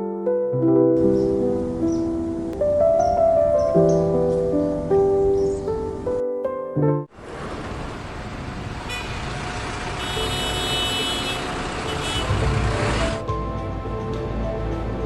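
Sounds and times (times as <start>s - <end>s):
road traffic noise: 1.0s - 6.2s, 7.1s - 15.0s
horn toot: 8.8s - 9.3s, 9.9s - 13.2s.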